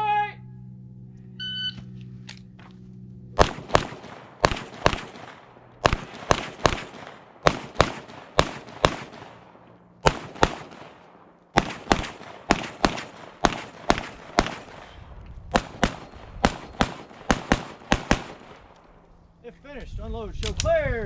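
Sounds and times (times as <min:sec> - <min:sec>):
rapid gunshots: 0:03.4 - 0:19.1.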